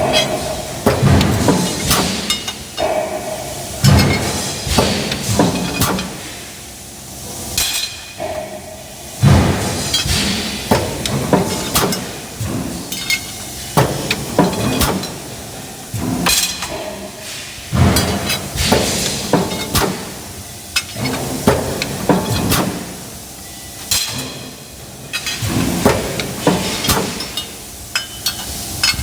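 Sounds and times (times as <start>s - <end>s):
metal clanks and knocks: 0.0s - 6.2s, 7.6s - 15.3s, 15.9s - 23.0s
factory machinery working steel: 0.0s - 29.0s.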